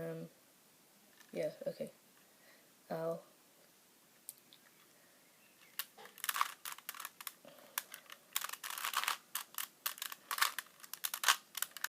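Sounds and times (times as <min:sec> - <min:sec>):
plastic puzzle cube clicking: 0:05.6 - 0:11.9.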